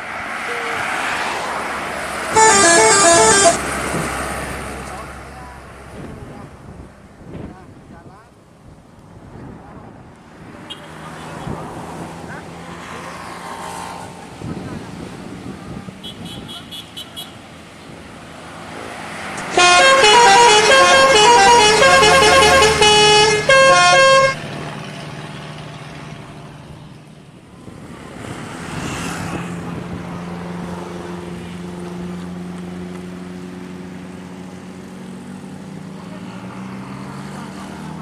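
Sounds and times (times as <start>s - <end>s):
road noise: 0.0s - 38.0s
vehicle engine: 0.0s - 38.0s
bus multi-tone horn melody: 2.2s - 3.8s, 15.6s - 17.4s, 19.4s - 24.5s.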